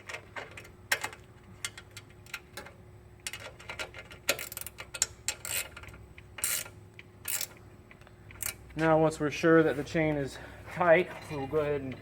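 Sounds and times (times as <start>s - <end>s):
ratchet wrench clicking: 3.2s - 7.6s.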